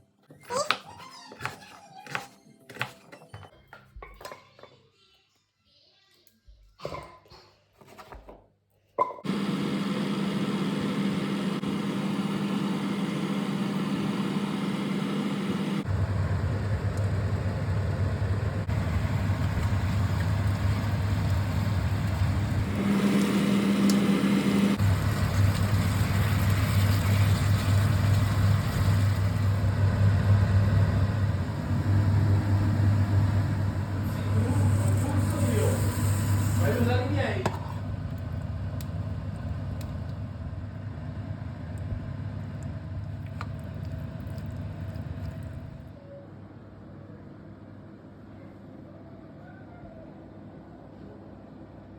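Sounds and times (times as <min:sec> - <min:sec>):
motor humming: 0:09.3 - 0:40.7.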